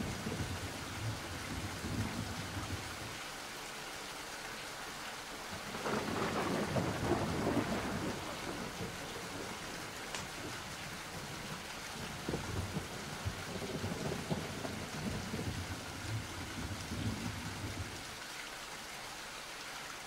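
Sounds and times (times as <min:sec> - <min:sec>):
steady rain: 0:00.0 - 0:20.0
thunder rolling: 0:05.7 - 0:18.0.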